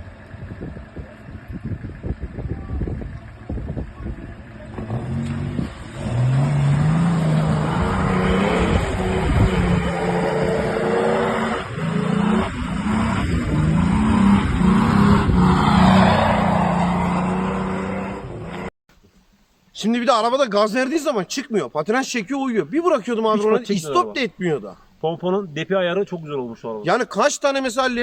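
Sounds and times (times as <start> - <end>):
spinning tyres rushing: 0.0 - 18.7
engine revving hard: 4.7 - 18.7.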